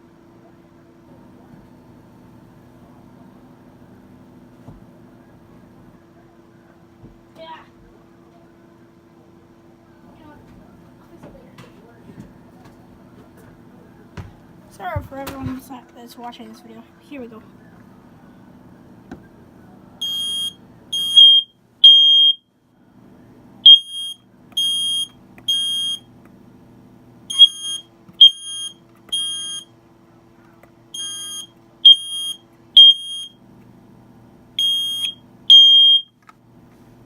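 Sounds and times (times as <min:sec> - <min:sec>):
smoke detector beeping: 0:20.0 - 0:22.5, 0:23.6 - 0:26.1, 0:27.3 - 0:29.7, 0:31.0 - 0:33.4, 0:34.6 - 0:36.2.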